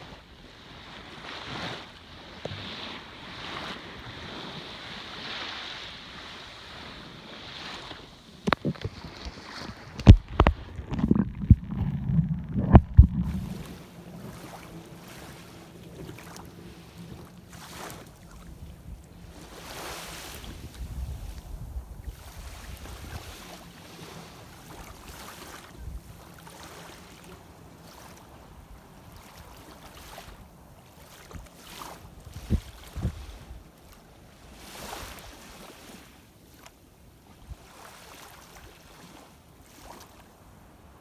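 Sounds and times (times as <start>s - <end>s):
muffled underwater water sloshing: 6.2s - 36.6s
steady low hum: 10.0s - 19.8s.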